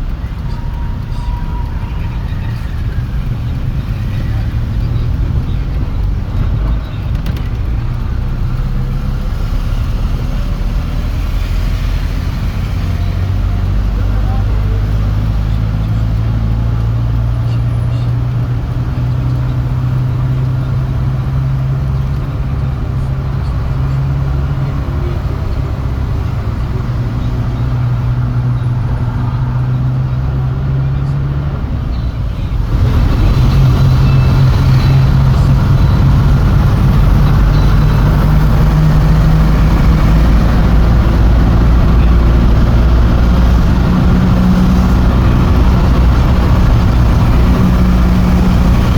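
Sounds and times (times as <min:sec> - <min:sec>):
city road traffic: 0:00.0 - 0:48.9
vehicle engine running: 0:00.0 - 0:48.9.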